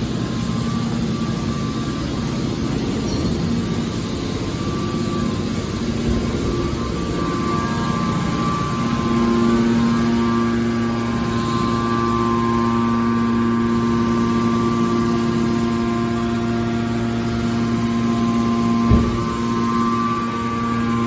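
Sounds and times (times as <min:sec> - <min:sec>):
hydraulic power unit humming: 0:00.0 - 0:21.0
short knock: 0:18.9 - 0:19.5.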